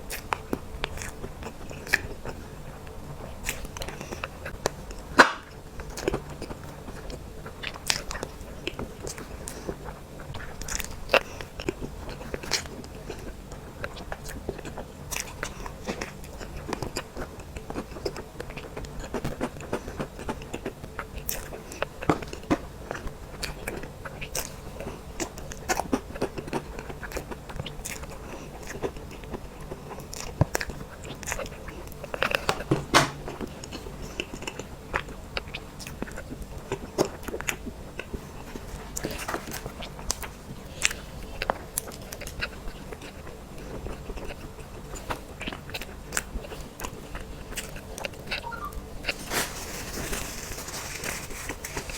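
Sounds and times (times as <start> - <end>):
wet chewing and biting: 0.1 - 2.4.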